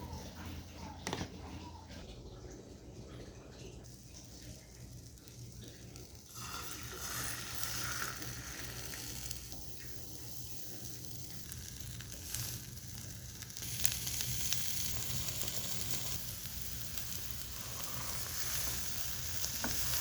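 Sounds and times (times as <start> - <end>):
omelette sizzling in a pan: 3.8 - 20.0.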